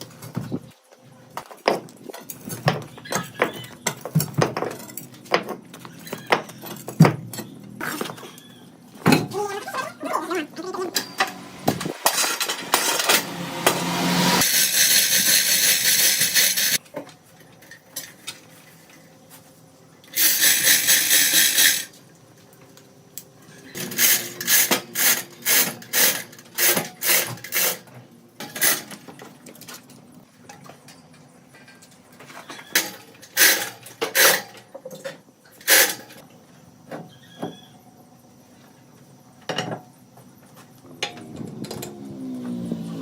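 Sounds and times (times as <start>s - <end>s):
power tools cutting wood: 10.9s - 16.8s, 41.4s - 43.0s.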